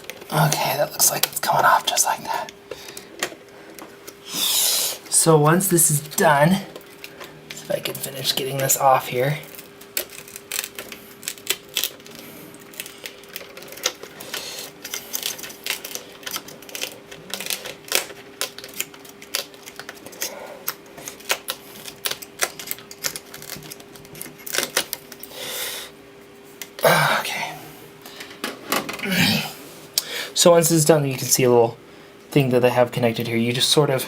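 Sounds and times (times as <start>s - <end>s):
rubbing peeling sounds: 0.0s - 25.3s
faint steady hum: 0.0s - 34.0s.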